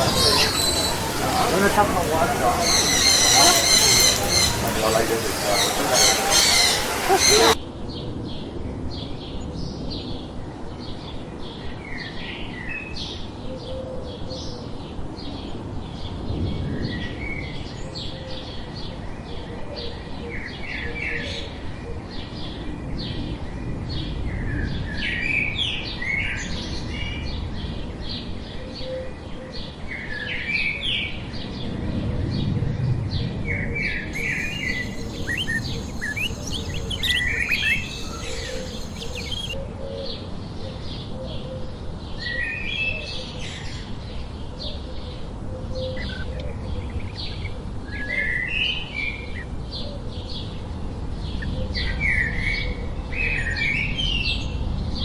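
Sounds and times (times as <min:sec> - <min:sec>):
birds chirping: 0:00.0 - 0:07.6, 0:34.1 - 0:39.6.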